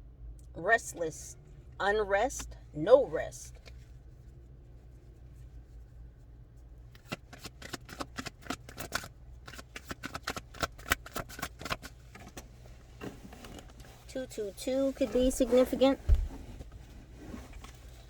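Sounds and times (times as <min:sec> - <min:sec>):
cards being shuffled: 0:07.0 - 0:12.4.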